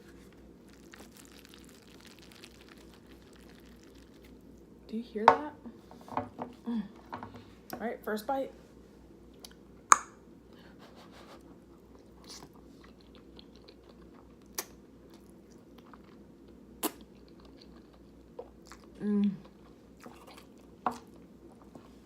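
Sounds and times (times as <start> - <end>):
wet chewing: 0.3 - 4.7, 11.8 - 21.7.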